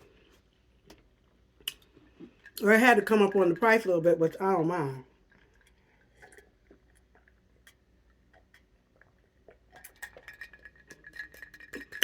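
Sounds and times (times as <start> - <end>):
chewing and mouth clicks: 1.6 - 2.3, 5.3 - 12.0.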